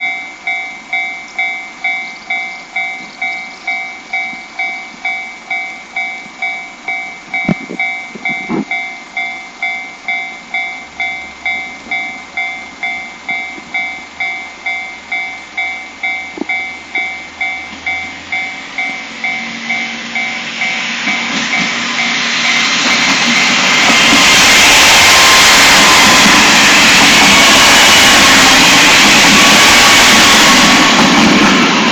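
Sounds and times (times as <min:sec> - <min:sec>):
level crossing alarm dinging: 0:00.0 - 0:31.1
diesel train passing: 0:00.0 - 0:31.9.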